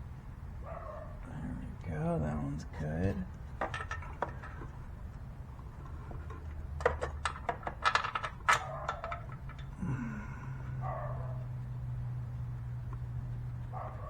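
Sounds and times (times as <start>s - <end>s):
steady low hum: 0.0s - 14.0s
metal tools clinking: 3.6s - 4.7s, 5.8s - 9.8s.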